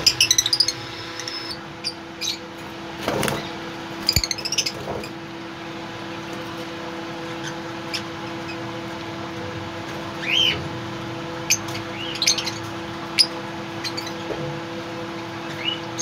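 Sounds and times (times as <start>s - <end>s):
birds chirping and squawking: 0.0s - 2.6s, 3.2s - 5.2s, 7.2s - 8.8s, 10.1s - 10.8s, 11.4s - 14.4s, 15.3s - 16.0s
steady low hum: 0.0s - 15.9s.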